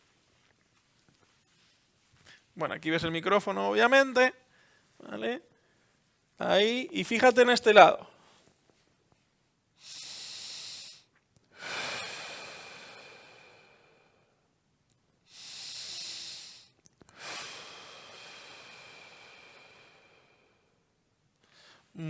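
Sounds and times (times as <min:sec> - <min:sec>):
man breathing slowly and deeply: 0:04.5 - 0:06.1, 0:09.8 - 0:14.5, 0:15.2 - 0:22.0.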